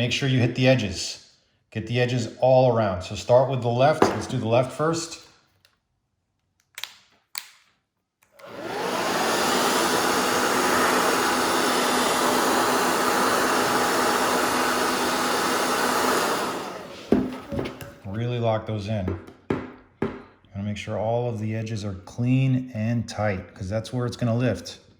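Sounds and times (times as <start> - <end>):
blow dryer blowing: 4.0 - 5.0, 8.4 - 18.2.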